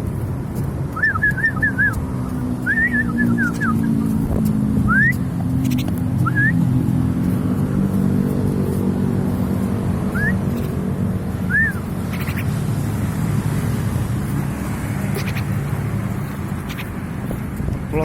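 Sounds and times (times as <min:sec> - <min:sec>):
vehicle engine rumbling: 0:00.0 - 0:18.0
whistled chirps: 0:01.0 - 0:02.0, 0:02.6 - 0:03.9, 0:06.2 - 0:06.6, 0:10.1 - 0:10.4, 0:11.5 - 0:11.8.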